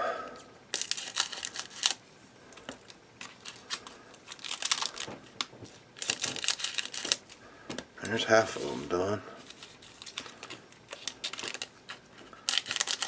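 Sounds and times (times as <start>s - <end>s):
foil wrappers crinkling: 0.7s - 7.5s, 8.1s - 13.0s
scissors snipping foil: 10.9s - 13.0s.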